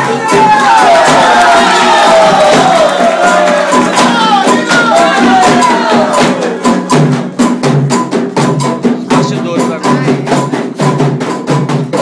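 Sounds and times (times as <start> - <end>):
voices chanting: 0.0 - 7.1
hand percussion beat: 0.0 - 12.0.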